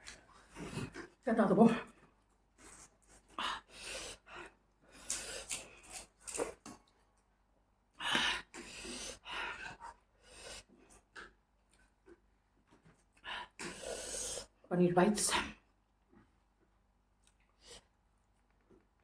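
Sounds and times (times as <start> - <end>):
breaths: 2.7 - 5.7, 8.0 - 11.0, 13.2 - 14.6
crunching and chewing: 4.9 - 7.2.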